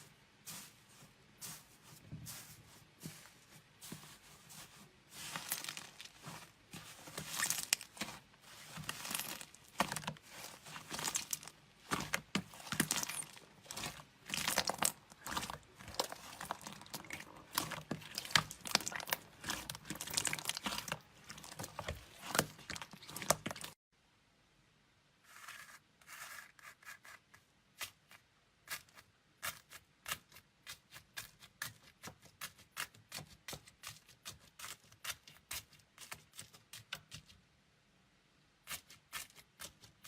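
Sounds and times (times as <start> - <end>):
slime crackling and popping: 8.8 - 23.8.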